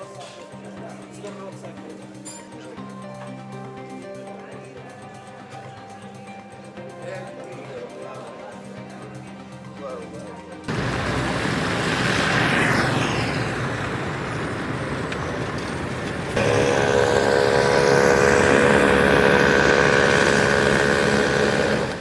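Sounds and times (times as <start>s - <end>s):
engine drone with held tone: 10.7s - 22.0s
vehicle passing close by: 10.7s - 22.0s.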